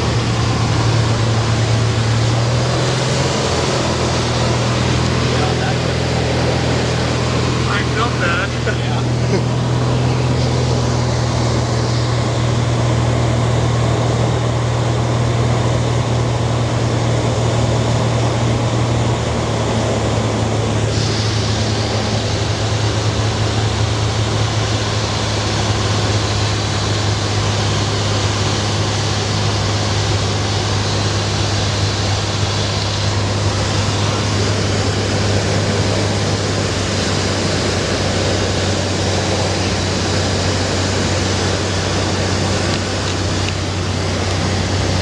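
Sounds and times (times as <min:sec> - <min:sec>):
light aircraft engine droning: 0:00.0 - 0:45.0
rushing hiss: 0:20.9 - 0:23.0.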